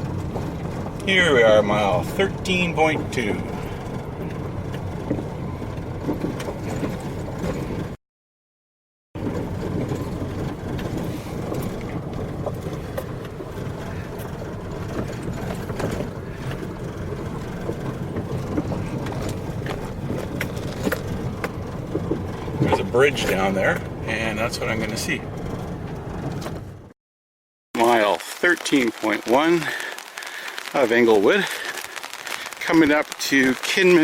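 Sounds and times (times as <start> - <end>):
steady low rumble: 0.0 - 8.0
rain pattering on an umbrella: 27.8 - 34.0.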